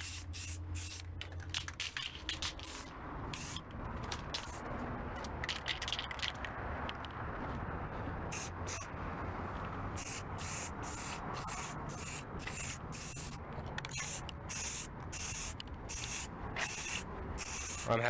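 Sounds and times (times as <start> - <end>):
spray can hissing bursts: 0.0 - 3.6, 4.3 - 4.6, 8.3 - 8.9, 10.0 - 18.0.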